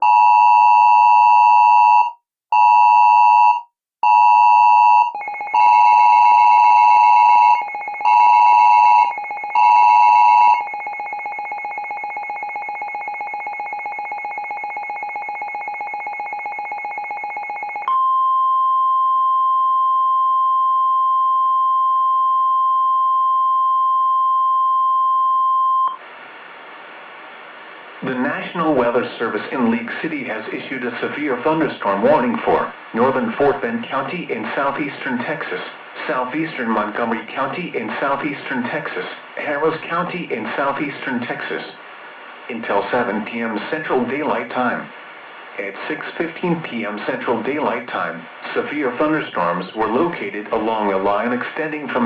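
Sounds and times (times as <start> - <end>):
continuous alert tone: 5.1 - 18.6
steady warning tone: 5.2 - 26.0.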